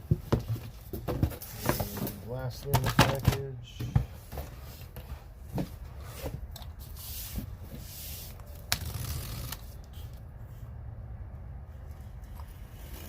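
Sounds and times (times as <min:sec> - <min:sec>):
packaging rustling and scraping: 0:00.5 - 0:03.4.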